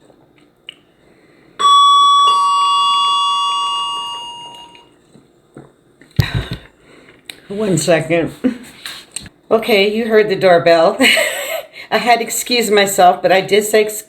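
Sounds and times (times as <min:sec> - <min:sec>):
two-note doorbell chime: 0:01.6 - 0:04.9
loud thump: 0:06.2 - 0:06.7.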